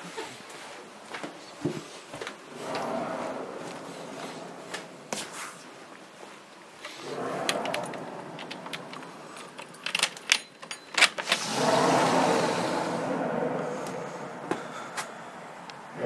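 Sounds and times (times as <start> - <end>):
low noisy drone with faint tones: 0.1 - 16.0
jangling rattle: 7.0 - 11.4.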